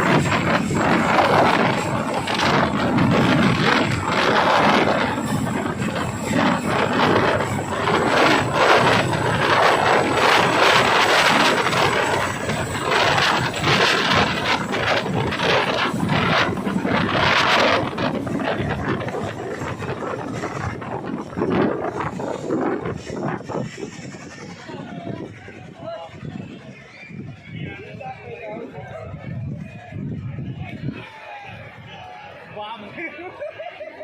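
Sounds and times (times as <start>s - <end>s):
helicopter rotor and engine: 0.0s - 27.0s.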